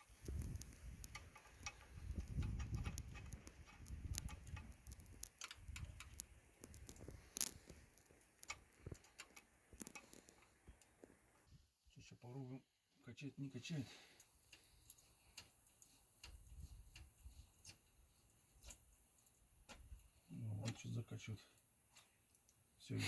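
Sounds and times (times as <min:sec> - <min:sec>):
light clicks and taps: 0:00.0 - 0:11.3, 0:14.2 - 0:22.6
rubbing and handling noise: 0:00.0 - 0:11.4.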